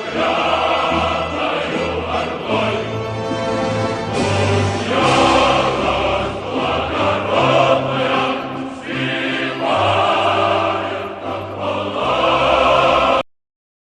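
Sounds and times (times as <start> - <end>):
choir singing slow chords: 0.0 - 13.3.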